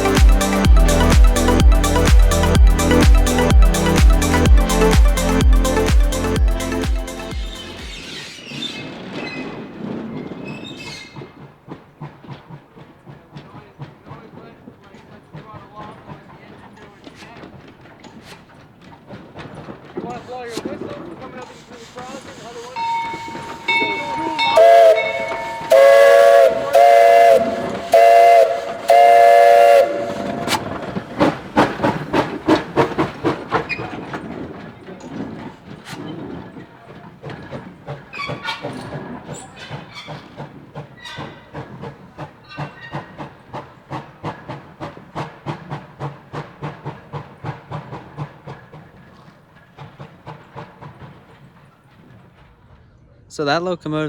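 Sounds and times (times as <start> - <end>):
steam locomotive exhaust chuffs: 0.0 - 52.8
steam whistle blasts: 22.5 - 30.7.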